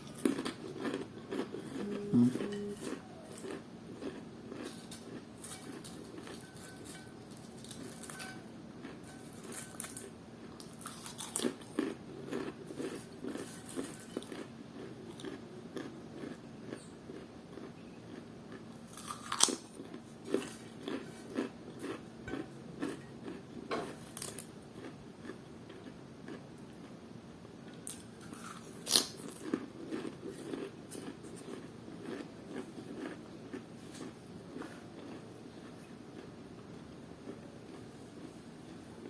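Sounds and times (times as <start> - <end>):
person chewing: 0.0 - 26.8, 27.8 - 36.3
crunchy food bites: 7.6 - 18.3, 18.9 - 26.4, 27.9 - 35.2.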